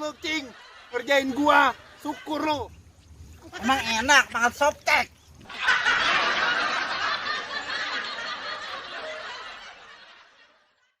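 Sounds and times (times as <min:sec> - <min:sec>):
group of people laughing: 0:00.0 - 0:02.7, 0:05.4 - 0:11.0.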